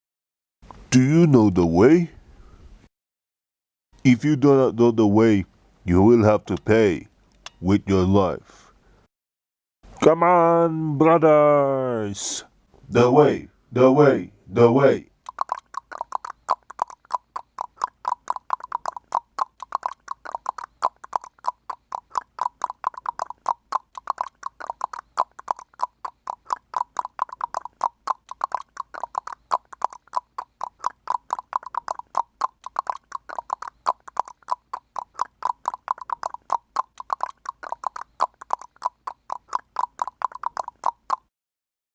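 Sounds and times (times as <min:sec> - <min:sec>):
person clicking tongue: 0:15.2 - 0:41.3.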